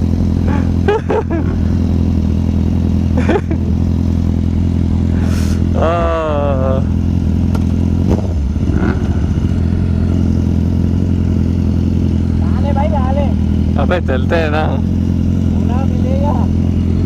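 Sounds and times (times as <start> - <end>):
motorcycle engine idling: 0.0 - 17.0
person calling out: 5.6 - 7.0.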